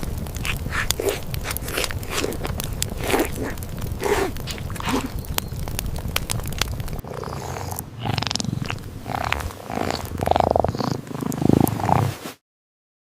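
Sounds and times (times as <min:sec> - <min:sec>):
cat purring: 0:07.0 - 0:12.2.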